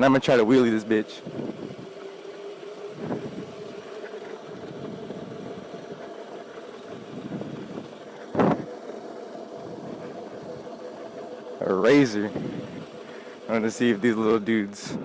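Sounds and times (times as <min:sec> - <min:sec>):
electric dirt bike motor whining: 0:00.0 - 0:15.0.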